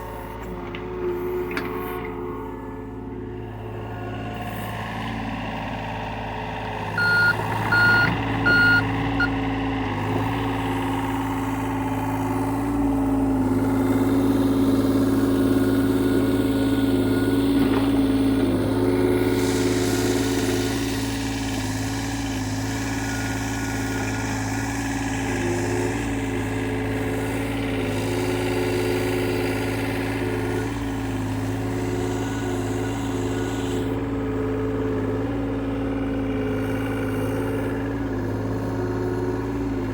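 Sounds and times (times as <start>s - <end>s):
diesel engine running: 0.0s - 39.9s
travel alarm beeps: 7.0s - 9.3s.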